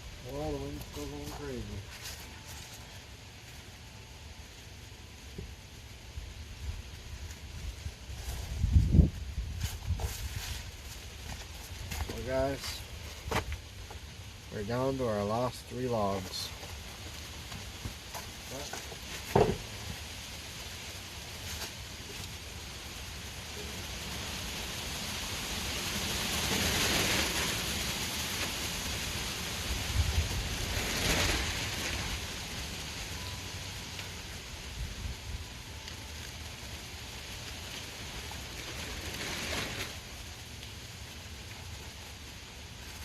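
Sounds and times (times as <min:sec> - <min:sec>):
strong wind gusting: 0:07.7 - 0:10.0
wind buffeting microphone: 0:07.7 - 0:10.4.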